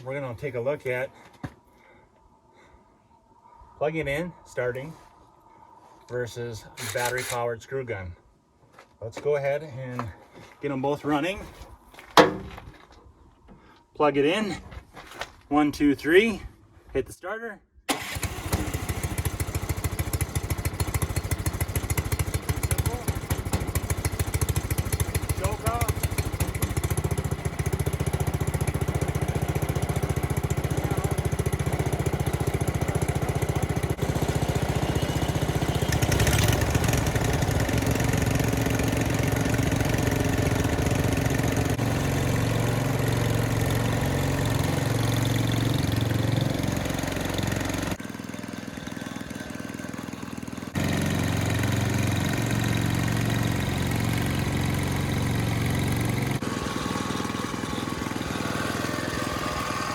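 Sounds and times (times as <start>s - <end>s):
snowblower engines running: 17.9s - 59.9s.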